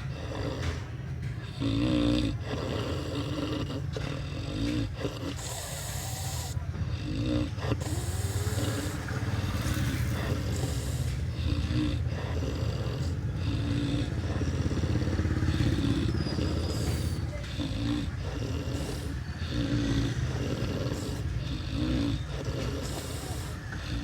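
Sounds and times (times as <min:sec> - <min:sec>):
person snoring: 0:00.0 - 0:24.0
low vehicle rumble: 0:03.5 - 0:24.0.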